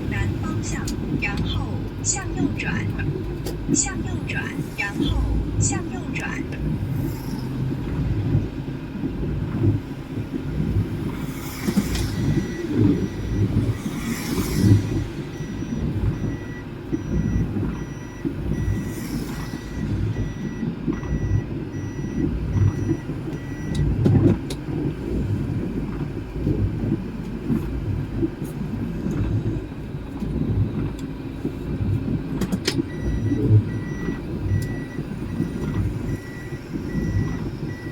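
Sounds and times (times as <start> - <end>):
car engine and road rumble: 0.0 - 37.9
repeated electronic beeps: 11.4 - 23.9, 32.9 - 37.9.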